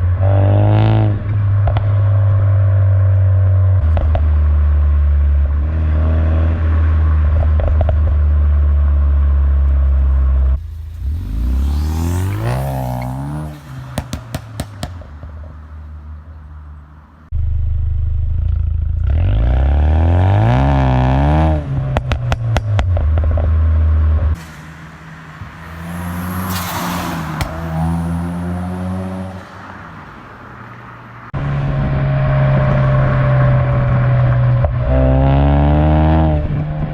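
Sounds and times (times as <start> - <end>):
exhaust pops and crackles: 3.8 - 4.6, 7.2 - 11.1, 13.0 - 16.4, 21.8 - 24.6
car engine revving: 10.6 - 36.9.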